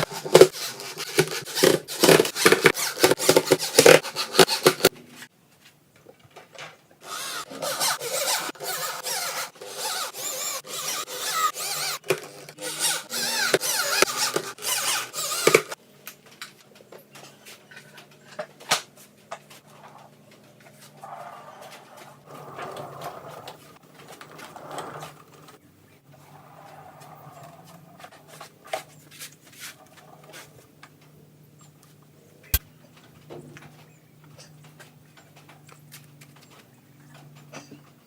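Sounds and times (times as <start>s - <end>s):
power tool whining on wood: 7.0s - 15.8s.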